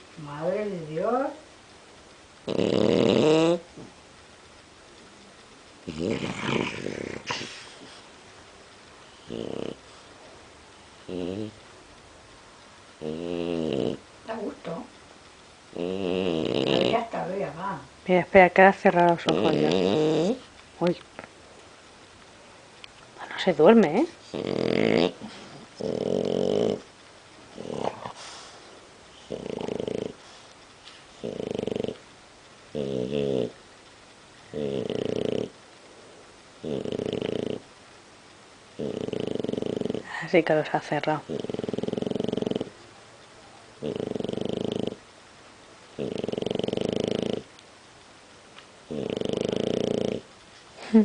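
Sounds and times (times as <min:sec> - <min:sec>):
pet snoring: 0:02.4 - 0:03.9, 0:05.8 - 0:08.1, 0:09.1 - 0:10.0, 0:11.0 - 0:11.6, 0:13.0 - 0:14.1, 0:15.7 - 0:17.2, 0:19.2 - 0:20.5, 0:23.8 - 0:26.9, 0:27.5 - 0:30.5, 0:31.1 - 0:32.0, 0:32.7 - 0:33.6, 0:34.5 - 0:35.6, 0:36.6 - 0:37.7, 0:38.8 - 0:40.2, 0:41.0 - 0:42.8, 0:43.8 - 0:45.0, 0:45.9 - 0:47.6, 0:48.8 - 0:50.3.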